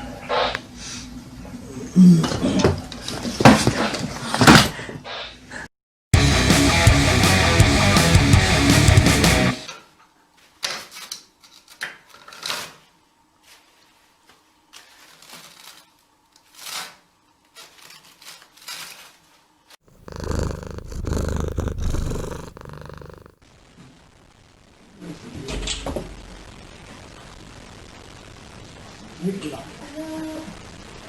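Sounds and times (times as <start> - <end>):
cat purring: 19.9 - 23.4.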